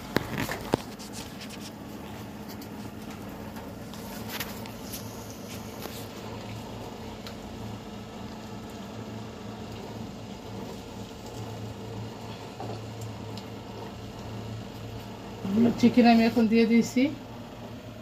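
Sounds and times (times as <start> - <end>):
steady low hum: 0.0 - 18.0
chicken sizzling in oil: 5.0 - 15.0.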